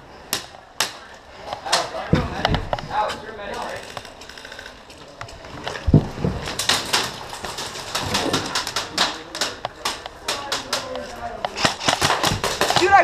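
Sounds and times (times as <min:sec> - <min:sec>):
pellets striking a wall: 0:07.8 - 0:13.0.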